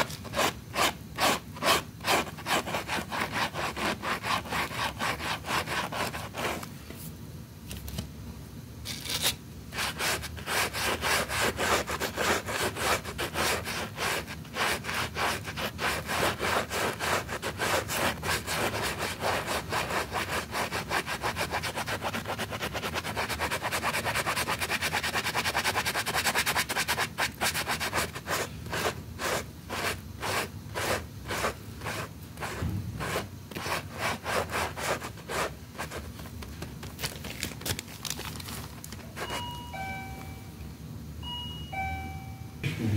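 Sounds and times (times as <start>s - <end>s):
brush scrubbing a wet rug: 9.8s - 36.0s.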